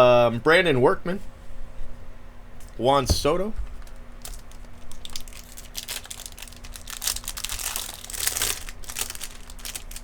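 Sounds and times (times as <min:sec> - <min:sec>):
card wrappers crinkling: 0:03.6 - 0:10.0.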